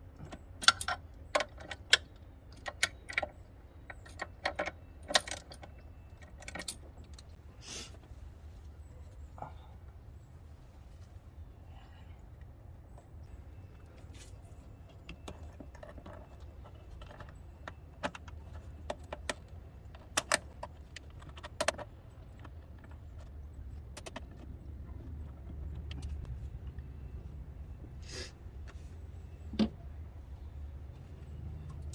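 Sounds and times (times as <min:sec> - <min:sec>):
low steady rumble: 0:00.0 - 0:31.9.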